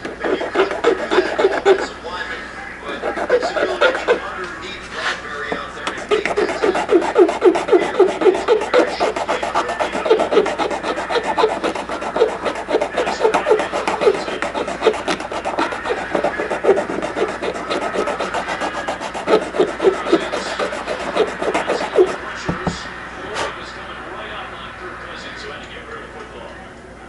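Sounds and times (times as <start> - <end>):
file rasping on plastic: 0.0 - 2.0, 2.9 - 4.4, 5.5 - 22.8.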